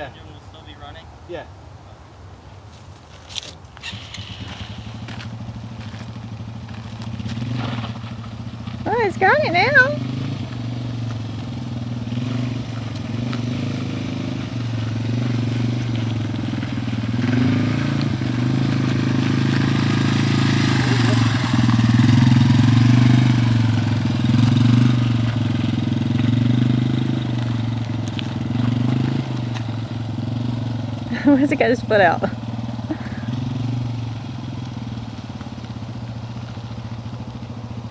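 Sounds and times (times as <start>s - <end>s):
dirt bike engine running: 3.8s - 37.9s.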